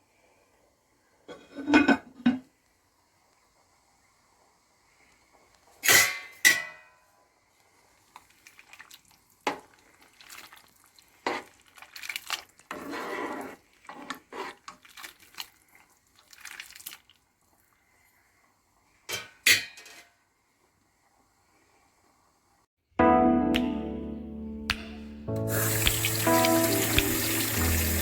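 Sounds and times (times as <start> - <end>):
dishes and utensils clinking: 5.8 - 7.0, 19.1 - 20.2.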